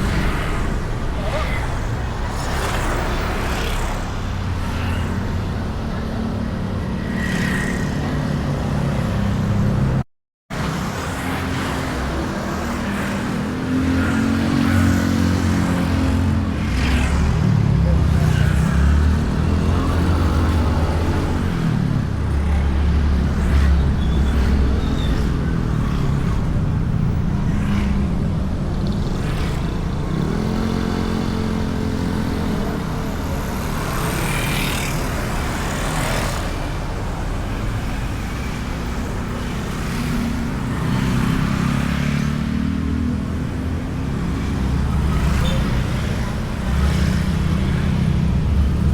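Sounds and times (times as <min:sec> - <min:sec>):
road noise: 0:00.0 - 0:48.9
traffic passing: 0:10.6 - 0:48.9.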